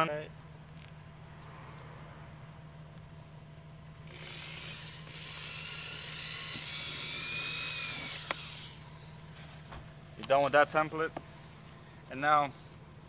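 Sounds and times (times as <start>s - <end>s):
power drill motor whining: 4.0s - 9.3s
drill click: 4.1s - 8.8s.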